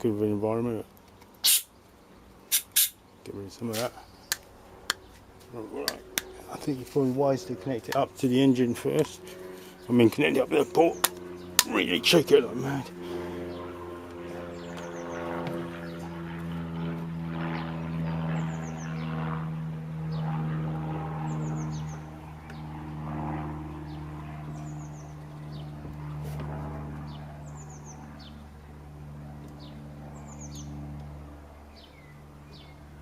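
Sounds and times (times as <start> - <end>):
low mechanical hum: 0.0 - 33.0
bird chirping: 1.1 - 3.3, 14.5 - 16.1, 21.3 - 22.7, 23.8 - 25.8.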